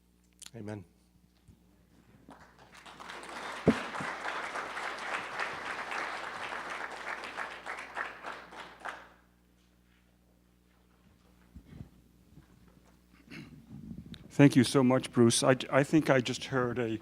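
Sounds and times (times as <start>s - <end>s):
audience applauding: 2.3s - 9.2s.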